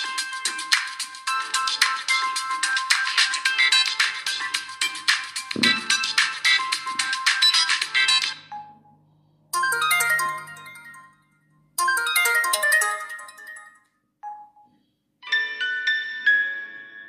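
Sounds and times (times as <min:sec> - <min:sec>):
chiming ringtone phrases: 0:08.4 - 0:14.8.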